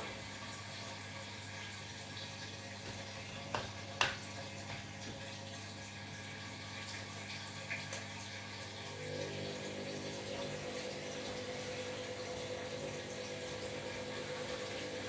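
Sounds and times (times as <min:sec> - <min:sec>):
washing machine hum: 0:00.0 - 0:15.0.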